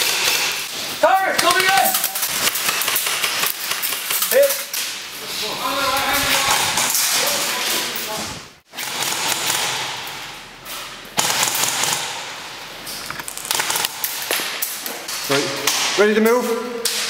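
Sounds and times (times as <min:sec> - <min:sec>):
airsoft guns firing: 0:00.0 - 0:00.7, 0:01.3 - 0:05.0, 0:08.7 - 0:10.3, 0:11.2 - 0:12.6, 0:13.3 - 0:14.7.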